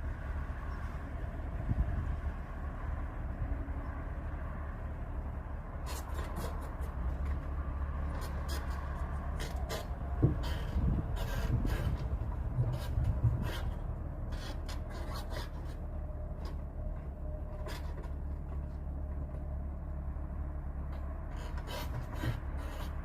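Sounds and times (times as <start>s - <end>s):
engine humming: 0.0s - 23.0s
light clicks and scrapes: 5.8s - 19.6s, 20.8s - 23.0s.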